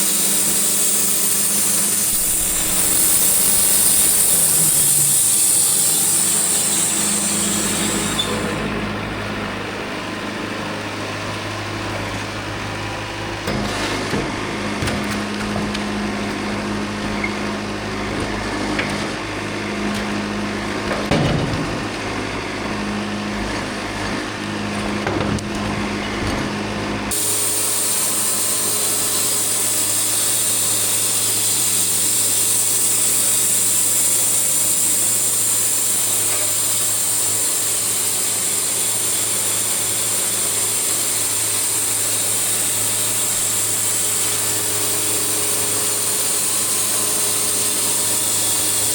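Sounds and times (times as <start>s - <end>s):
blade sawing through log: 0.0s - 8.8s, 27.1s - 48.9s
sawmill engine hum: 0.0s - 48.9s.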